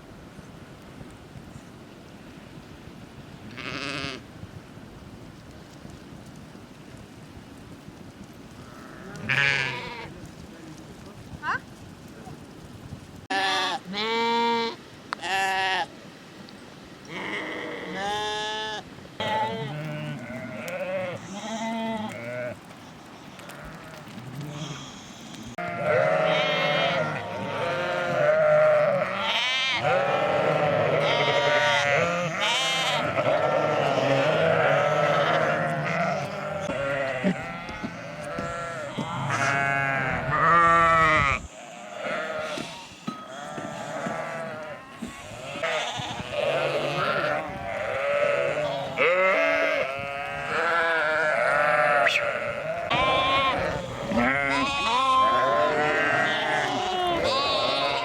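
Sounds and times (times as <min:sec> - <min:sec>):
sheep bleating: 0:08.7 - 0:10.1, 0:13.3 - 0:15.9, 0:17.1 - 0:22.6, 0:23.4 - 0:58.0.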